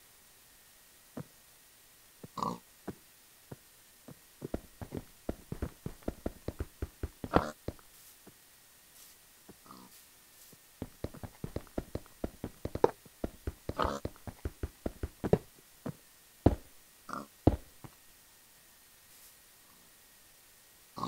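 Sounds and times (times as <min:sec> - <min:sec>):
sharp knocks and taps: 0:04.5 - 0:07.8, 0:10.8 - 0:15.5, 0:16.5 - 0:16.7, 0:17.5 - 0:17.9.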